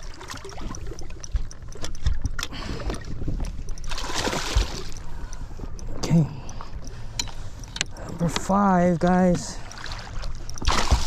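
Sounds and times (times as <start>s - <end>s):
water slapping against boat hull: 0.0s - 5.0s, 9.7s - 11.0s
knocks and clicks: 0.0s - 5.1s.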